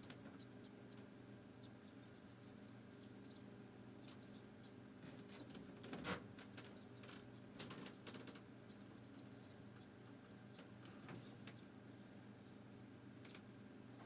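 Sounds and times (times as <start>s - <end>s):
faint scratching and clicking: 4.0s - 12.6s, 13.2s - 14.0s.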